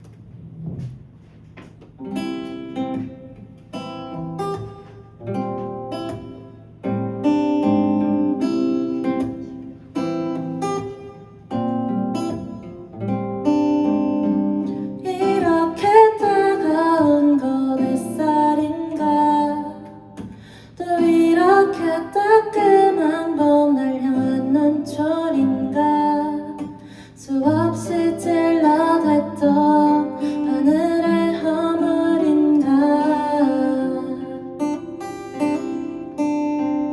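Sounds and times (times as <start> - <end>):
acoustic guitar chords: 0.0 - 36.9
person singing: 15.0 - 19.9.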